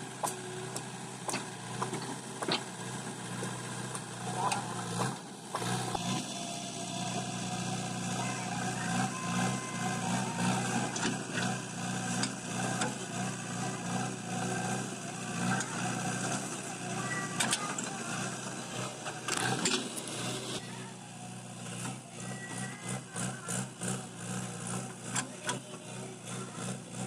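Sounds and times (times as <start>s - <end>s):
diesel engine running: 0.0s - 27.0s.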